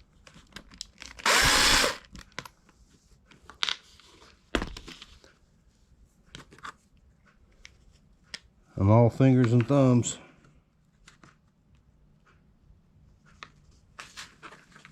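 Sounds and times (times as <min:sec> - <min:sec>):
power drill burst: 0:01.2 - 0:02.0.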